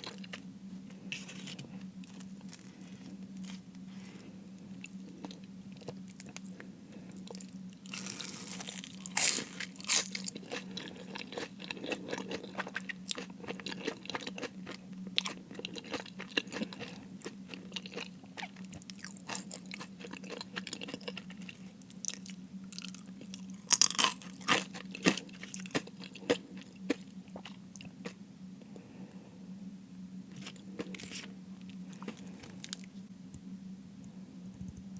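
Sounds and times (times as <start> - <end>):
chewing: 0.0 - 28.2, 30.3 - 33.0
crunching bites of fried food: 7.2 - 28.2.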